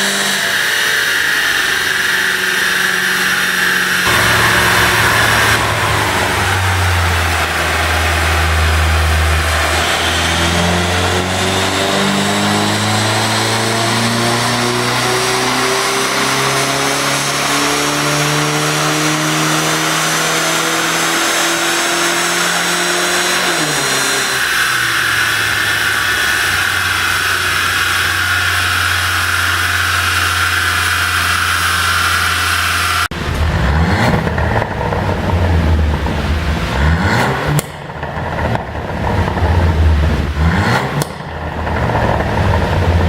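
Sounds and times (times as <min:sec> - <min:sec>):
car engine revving under load: 0:00.0 - 0:43.0
engine whine: 0:00.0 - 0:43.0
exhaust pops and crackles: 0:23.4 - 0:43.0.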